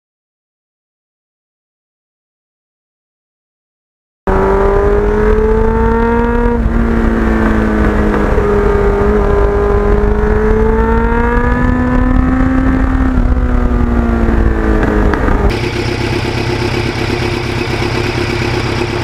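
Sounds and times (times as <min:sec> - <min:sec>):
motorcycle engine running: 0:04.3 - 0:19.0
steady low rumble: 0:05.3 - 0:19.0.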